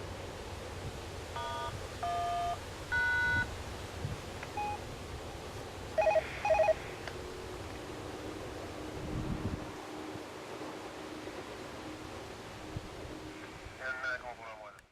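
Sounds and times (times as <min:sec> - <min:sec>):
wind and road noise: 0:00.0 - 0:14.9
electronic beeps: 0:04.6 - 0:04.8.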